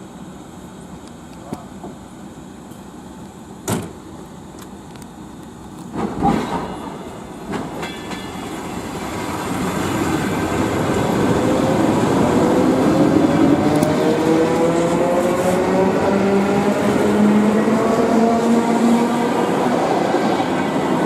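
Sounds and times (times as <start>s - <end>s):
electric train approaching: 6.4s - 21.0s
rising whine: 10.0s - 21.0s.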